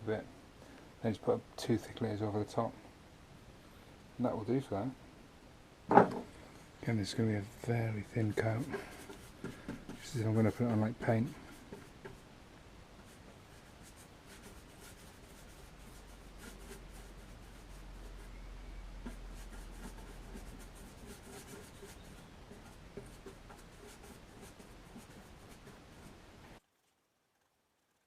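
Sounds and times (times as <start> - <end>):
brush scratchy rubbing: 7.1 - 12.3, 13.0 - 26.2.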